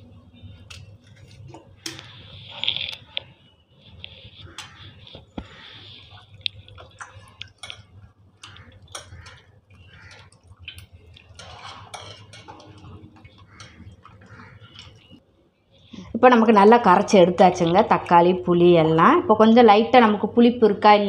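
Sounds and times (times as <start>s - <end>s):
hands squeezing wet food: 0.7s - 16.0s.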